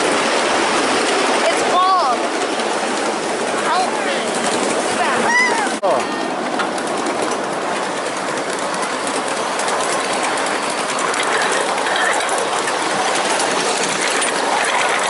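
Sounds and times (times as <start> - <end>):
miniature train wheels rumbling on rail: 0.0 - 15.0.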